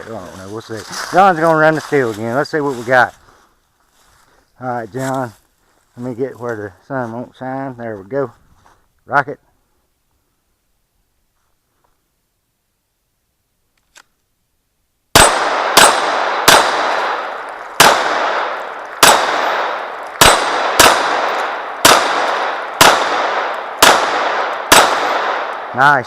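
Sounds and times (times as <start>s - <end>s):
handgun shots ringing on steel: 15.2s - 25.7s.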